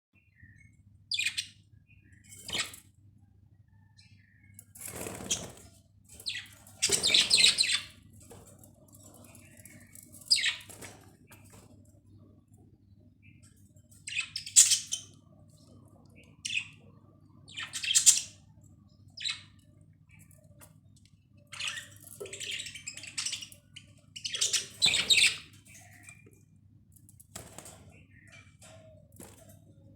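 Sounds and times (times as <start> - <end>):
budgerigars chirping and squawking: 1.1 - 1.6, 2.3 - 2.9, 4.8 - 8.1, 9.2 - 11.6, 14.0 - 18.5, 19.1 - 19.6, 21.4 - 26.3.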